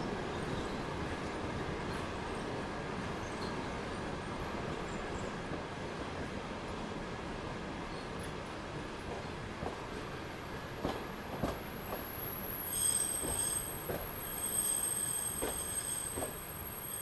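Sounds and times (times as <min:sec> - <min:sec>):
railway wagons rolling: 0:00.0 - 0:17.0
high wheel squeal: 0:12.1 - 0:17.0.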